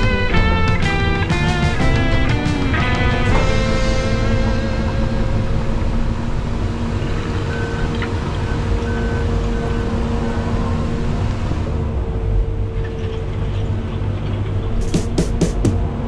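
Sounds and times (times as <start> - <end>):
excavator diesel engine: 0.0 - 11.2.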